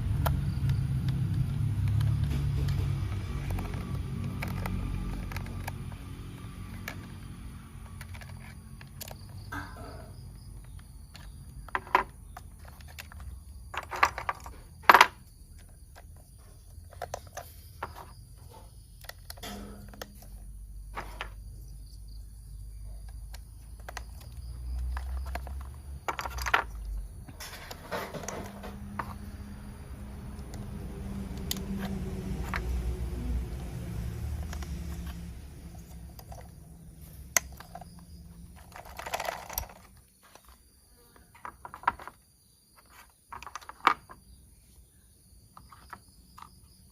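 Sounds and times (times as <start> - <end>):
toy train parts clicking: 0.0 - 9.6, 10.2 - 18.1, 19.0 - 20.5, 23.0 - 40.6.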